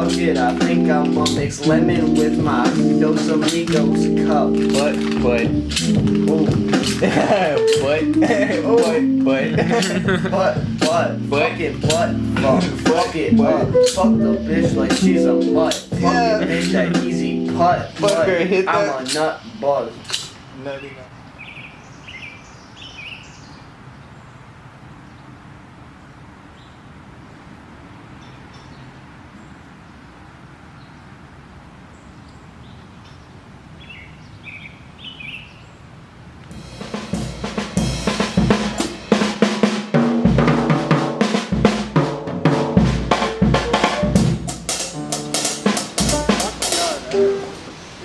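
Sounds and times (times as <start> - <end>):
bass and melody notes: 0.0 - 19.0, 36.5 - 47.9
drum kit playing a busy beat: 0.0 - 19.3, 36.5 - 47.7
low outdoor background noise: 0.0 - 48.0.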